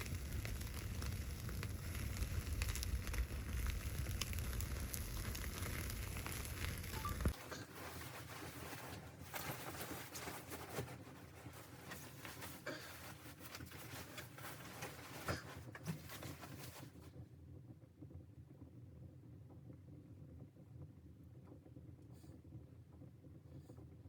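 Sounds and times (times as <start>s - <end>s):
low rumble: 0.0s - 7.4s
wood fire crackling: 0.0s - 17.0s.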